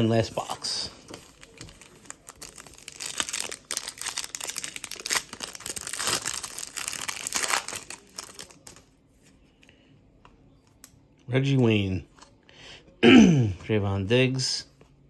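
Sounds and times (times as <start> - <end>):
plastic wrapping crinkling and tearing: 0.4 - 8.9.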